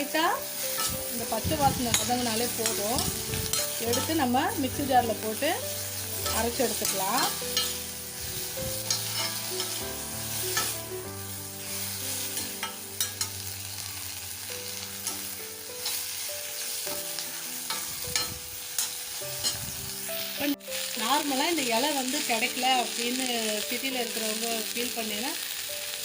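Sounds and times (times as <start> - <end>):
leaves sizzling in oil: 0.0 - 26.0
spatula scraping and knocking pan: 8.4 - 10.8.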